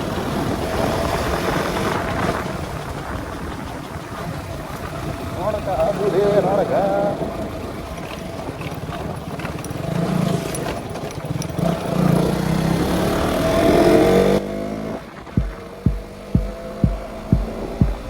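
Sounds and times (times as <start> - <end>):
wind and road noise: 0.0 - 18.0
motorcycle engine accelerating: 11.6 - 18.0
deep thudding beat: 15.4 - 18.0.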